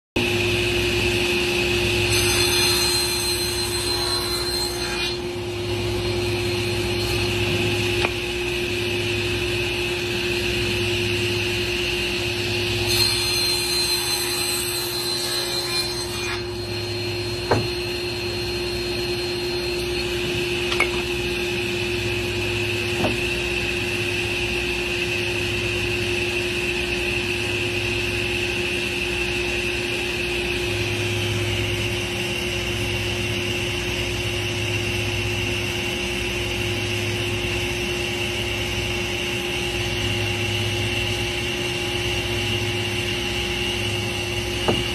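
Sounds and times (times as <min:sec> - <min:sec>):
power tool whine: 0:00.2 - 0:26.2
power tool cutting wood: 0:01.9 - 0:05.2, 0:12.2 - 0:21.1
sharp knocks: 0:17.5 - 0:17.8.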